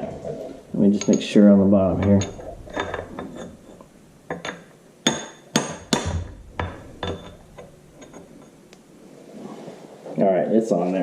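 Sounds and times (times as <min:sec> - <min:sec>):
hammer tapping sheet metal: 0:05.1 - 0:08.5.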